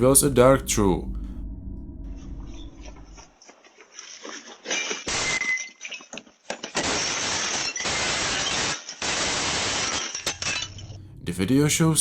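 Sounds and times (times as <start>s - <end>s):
shattering glass crashes: 3.9s - 11.0s
glass clinking and tinkling: 4.0s - 6.7s, 9.8s - 11.0s.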